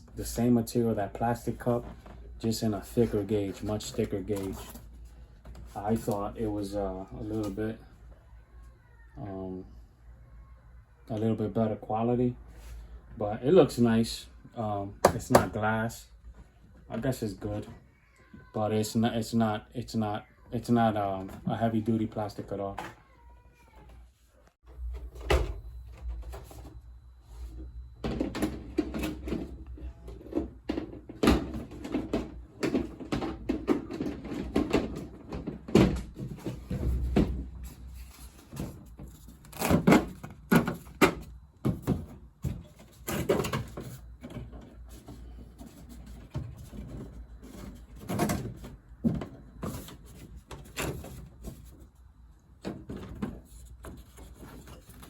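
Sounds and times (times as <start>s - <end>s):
objects knocking and rattling: 27.5s - 52.0s.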